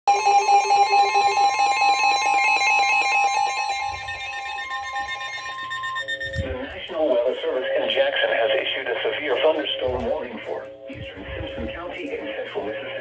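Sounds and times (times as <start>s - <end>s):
fast pulsing alarm beep: 0.1s - 7.2s
steady high electronic tone: 0.1s - 7.6s.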